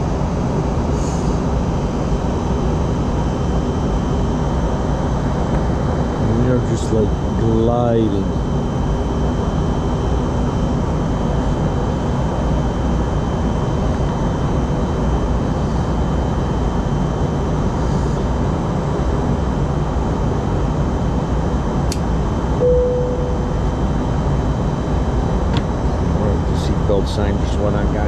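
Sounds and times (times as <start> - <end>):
short chime: 22.6 - 23.8.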